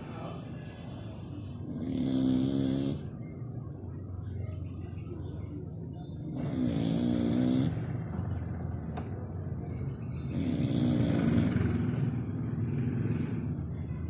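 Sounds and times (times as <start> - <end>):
dog snoring: 1.6 - 3.2, 6.2 - 7.9, 10.2 - 12.1.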